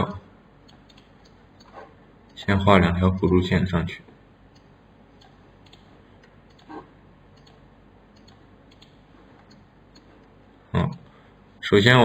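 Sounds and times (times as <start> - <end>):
computer mouse clicks: 0.6 - 1.8, 4.5 - 10.3.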